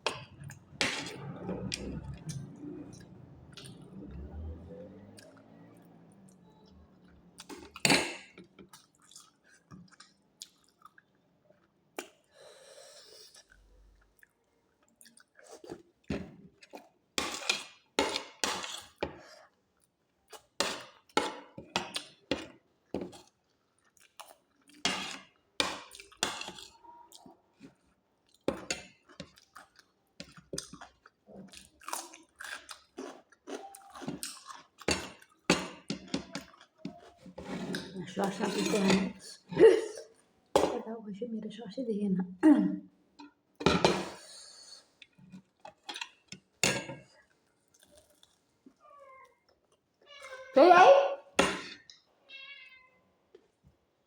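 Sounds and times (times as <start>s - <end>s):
chewing crisp food: 0.1s - 38.6s, 47.1s - 50.0s.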